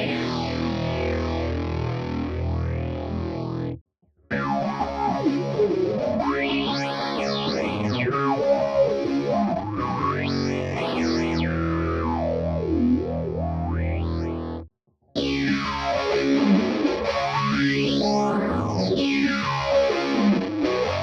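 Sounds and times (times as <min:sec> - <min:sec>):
distorted electric guitar chords: 0:00.0 - 0:21.0.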